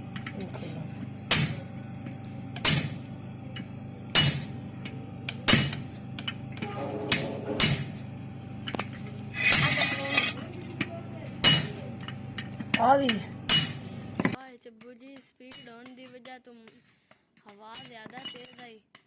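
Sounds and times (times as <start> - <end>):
metallic clatter: 0.0 - 14.4, 17.7 - 18.8
hammer blows on metal: 3.6 - 8.0, 9.3 - 14.4.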